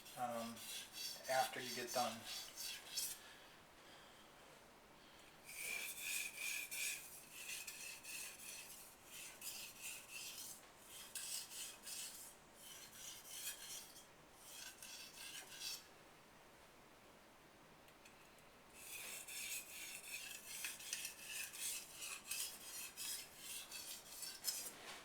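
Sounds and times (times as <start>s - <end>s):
knife scraping on water stone: 0.0s - 3.2s, 5.5s - 15.9s, 18.8s - 24.8s.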